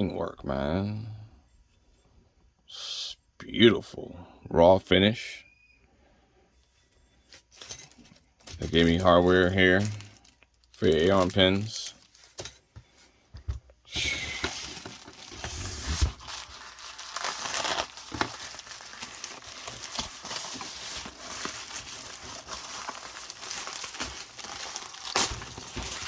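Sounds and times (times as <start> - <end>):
packaging crinkling and rustling: 7.4 - 12.6, 14.0 - 26.0.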